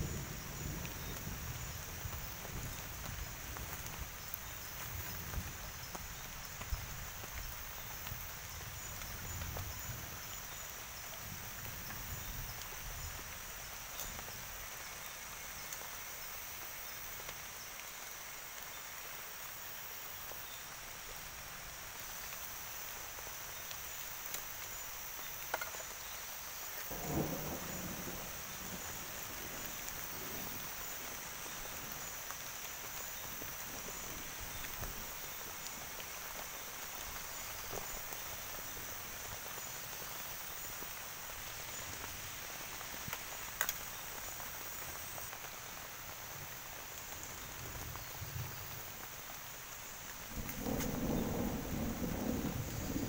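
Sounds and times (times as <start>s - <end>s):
crickets and insects chirring: 0.0s - 53.0s
light rain: 0.0s - 53.0s
faint clicks: 43.1s - 43.9s.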